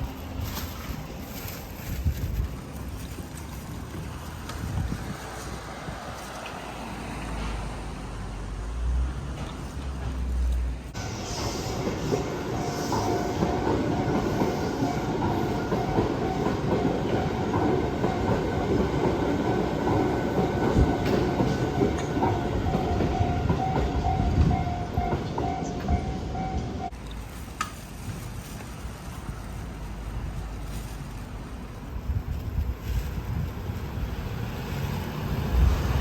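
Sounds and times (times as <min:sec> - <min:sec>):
train wheels clattering on rails: 0:09.2 - 0:29.2.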